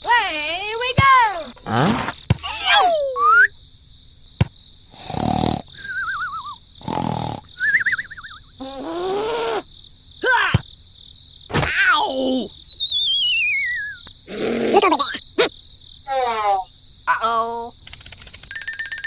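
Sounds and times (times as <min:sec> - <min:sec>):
warbling whistle tones: 0:12.5 - 0:14.1
sharp clicks: 0:17.8 - 0:18.7.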